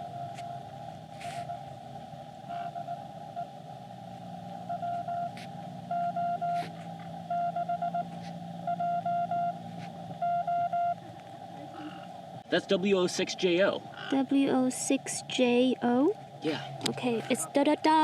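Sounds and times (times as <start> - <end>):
morse code beeps: 0.0 - 1.8, 2.5 - 3.5, 4.6 - 6.7, 7.3 - 11.0
faint low hum: 0.0 - 18.0.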